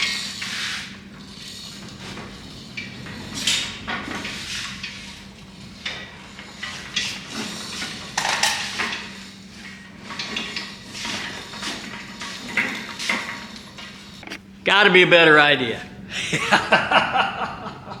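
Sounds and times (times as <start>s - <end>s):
metal cart rattling and clanking: 0.0s - 14.2s
faint steady hum: 13.5s - 18.0s.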